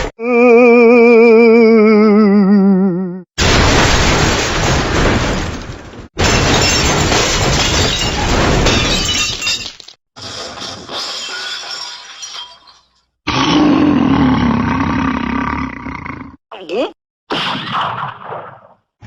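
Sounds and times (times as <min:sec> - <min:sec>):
glass shattering crash: 0:03.4 - 0:13.1.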